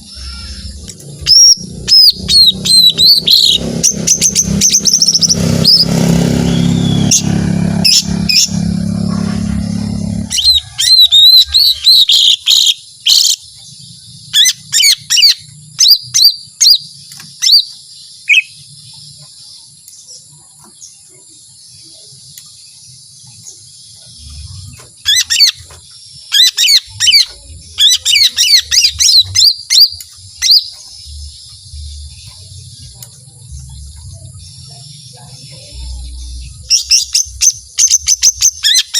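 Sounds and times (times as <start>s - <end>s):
loud low noise: 0.0s - 11.8s
bird singing rapid high notes: 0.0s - 38.9s.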